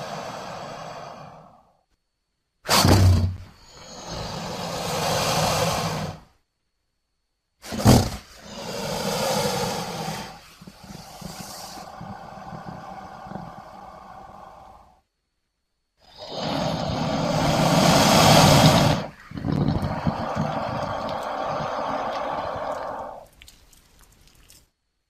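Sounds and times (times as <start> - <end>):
crocodilian vocalization: 2.7 - 6.3, 7.8 - 15.0, 16.0 - 24.6.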